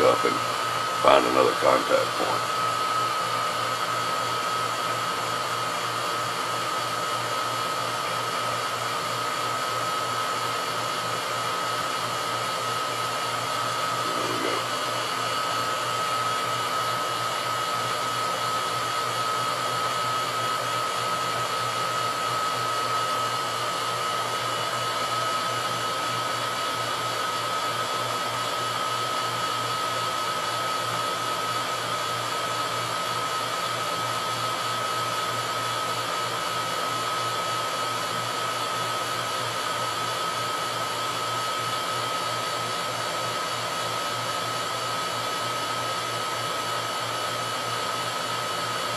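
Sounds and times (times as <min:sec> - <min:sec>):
high whine: 0:00.0 - 0:02.6, 0:14.0 - 0:15.2
vacuum pump running: 0:00.0 - 0:48.9.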